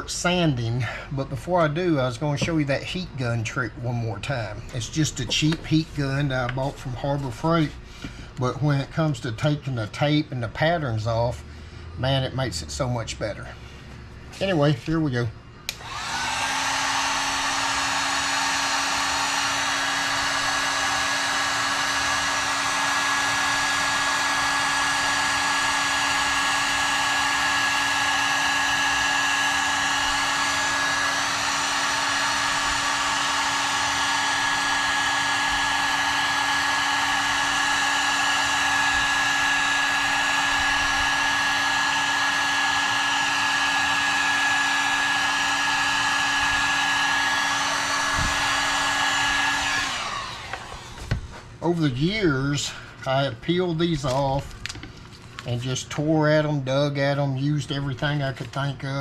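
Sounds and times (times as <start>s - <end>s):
motor hum: 15.7s - 42.2s, 46.5s - 51.4s
heat gun blowing hot air: 15.7s - 51.5s.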